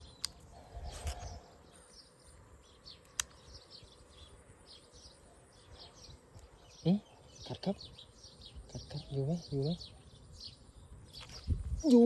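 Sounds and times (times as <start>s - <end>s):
sharp clicks: 0.1s - 2.0s, 3.0s - 3.5s.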